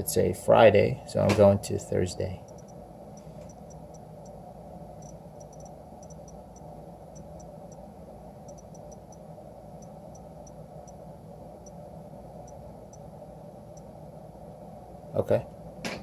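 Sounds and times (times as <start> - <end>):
steady low hum: 0.0 - 16.0
watch crown clicking: 5.0 - 7.8.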